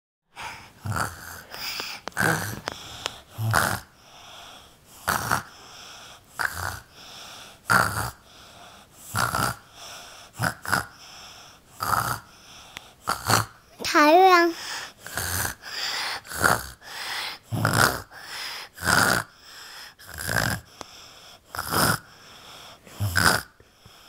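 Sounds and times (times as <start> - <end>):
person imitating snoring: 0.4 - 3.9, 5.0 - 5.6, 6.4 - 7.0, 7.7 - 8.2, 9.1 - 9.7, 10.4 - 11.0, 11.8 - 12.3, 13.0 - 19.4, 20.0 - 20.7, 21.5 - 22.1, 22.9 - 23.6
soft breathing: 0.4 - 9.1, 9.7 - 13.0, 14.3 - 18.8, 19.4 - 20.0, 20.6 - 24.0.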